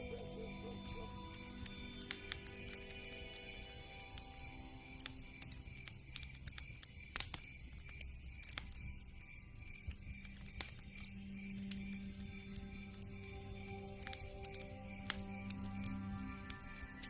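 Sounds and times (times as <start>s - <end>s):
logs crackling and popping: 0.0s - 17.0s.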